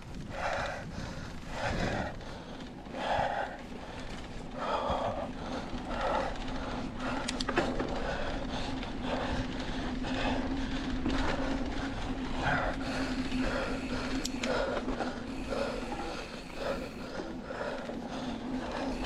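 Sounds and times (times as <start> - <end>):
bike trail rolling noise: 0.0 - 19.0
person breathing hard: 0.0 - 19.0
steady low hum: 0.0 - 19.0
sharp clicks: 7.2 - 7.8, 14.1 - 14.6.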